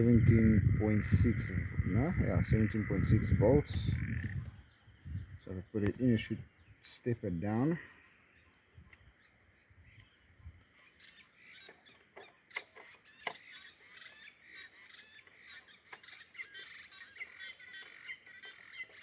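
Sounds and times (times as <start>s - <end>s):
steady high hiss: 0.0s - 11.6s
bird calls: 0.0s - 19.0s.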